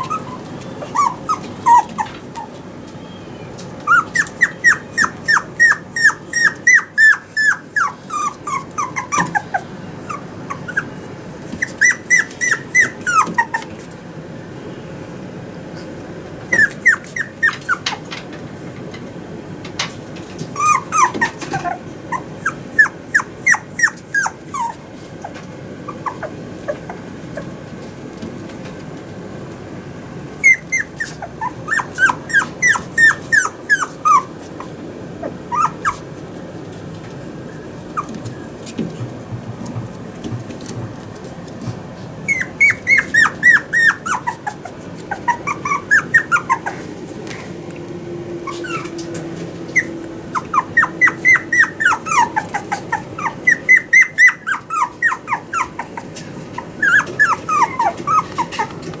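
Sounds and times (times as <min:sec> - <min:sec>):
puppy whining: 0:00.0 - 0:13.9, 0:15.8 - 0:18.2, 0:20.3 - 0:27.8, 0:30.3 - 0:36.4, 0:37.4 - 0:39.0, 0:42.2 - 0:59.0.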